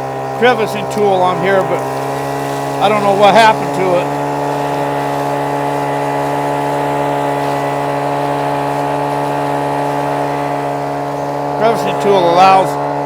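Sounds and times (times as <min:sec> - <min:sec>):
vacuum engine drone: 0:00.0 - 0:13.0.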